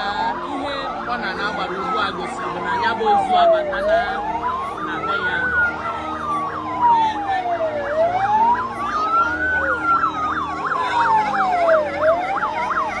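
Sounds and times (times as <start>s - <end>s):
wailing siren: 0.0s - 13.0s
yelping siren: 0.0s - 13.0s.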